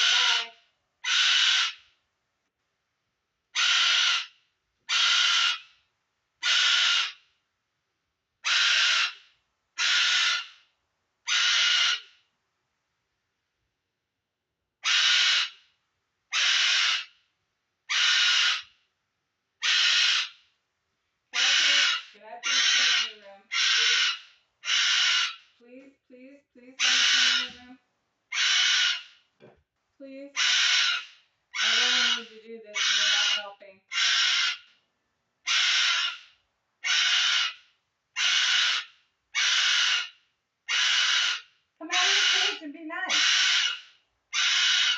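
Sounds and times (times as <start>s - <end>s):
pet bird screaming: 0.0s - 1.8s, 3.6s - 5.7s, 6.4s - 7.2s, 8.4s - 9.2s, 9.8s - 10.6s, 11.3s - 12.1s, 14.8s - 15.6s, 16.3s - 17.1s, 17.9s - 18.7s, 19.6s - 20.4s, 21.4s - 25.5s, 26.8s - 27.6s, 28.3s - 29.2s, 30.4s - 34.7s, 35.4s - 37.6s, 38.2s - 44.9s.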